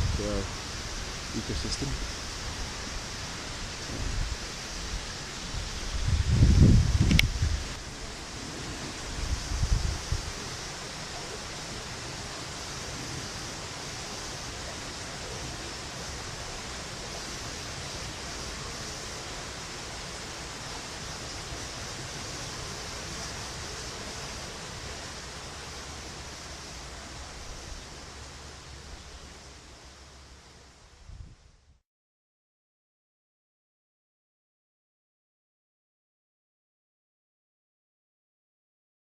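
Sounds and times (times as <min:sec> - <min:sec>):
wind rumbling on microphone: 0:00.0 - 0:30.1, 0:30.8 - 0:31.8.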